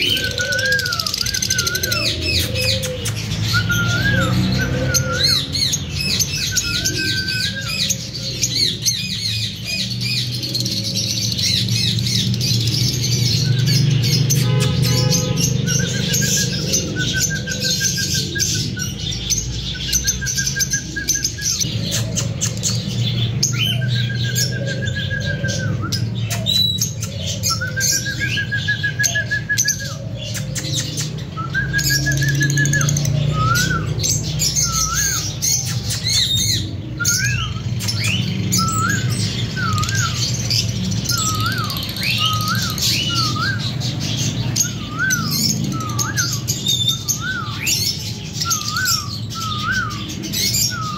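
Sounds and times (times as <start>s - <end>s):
lovebirds trilling and chirping: 0.0s - 50.9s.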